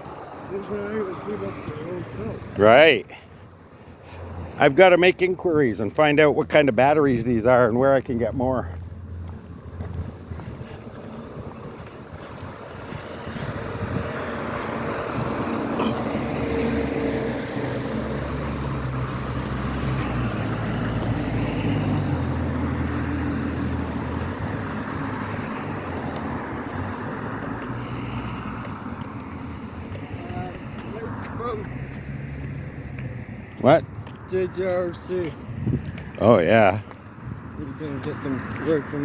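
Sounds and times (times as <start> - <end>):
car engine and road noise: 0.0 - 39.0.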